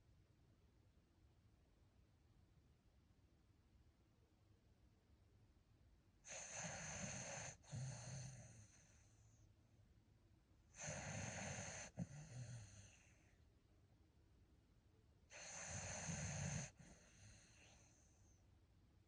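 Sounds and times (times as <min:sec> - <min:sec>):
dog snoring: 0:06.3 - 0:09.3, 0:10.7 - 0:13.3, 0:15.3 - 0:18.2.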